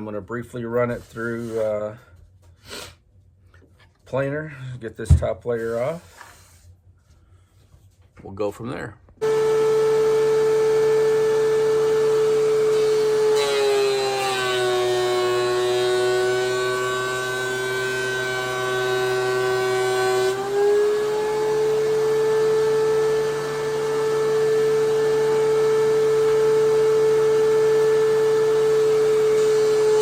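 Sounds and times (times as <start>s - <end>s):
thickness planer motor whine: 9.2s - 30.0s.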